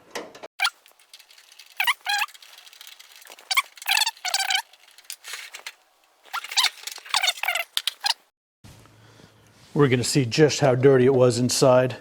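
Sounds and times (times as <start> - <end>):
screws squealing in sheet metal: 0.6 - 8.2.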